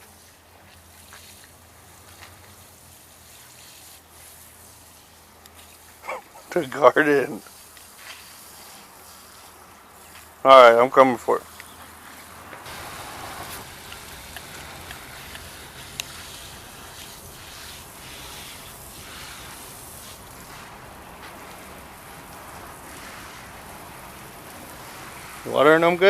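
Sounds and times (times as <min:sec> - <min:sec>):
water spraying onto plants: 0:00.0 - 0:26.0.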